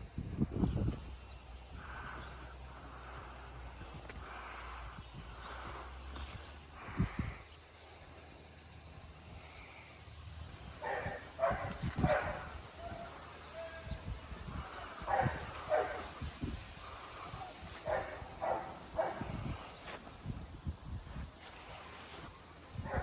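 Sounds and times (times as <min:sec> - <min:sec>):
dog barking: 0:10.8 - 0:14.0, 0:14.7 - 0:16.2, 0:17.4 - 0:19.4.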